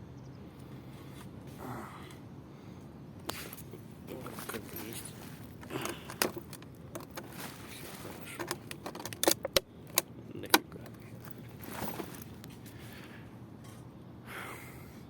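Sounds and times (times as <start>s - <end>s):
faint steady background noise: 0.0s - 15.0s
sharp clicks and clattering: 5.6s - 7.4s, 8.2s - 12.5s.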